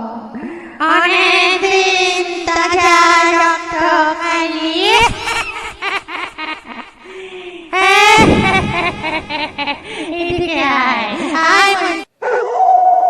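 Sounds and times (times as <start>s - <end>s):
high wavering sung voice: 0.0s - 5.6s, 7.6s - 8.9s, 10.1s - 12.1s.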